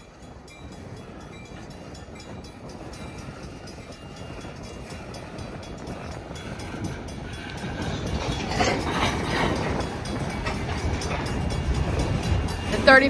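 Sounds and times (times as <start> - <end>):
diesel locomotive rumble: 0.0 - 13.0
train wheels on rails: 0.0 - 13.0.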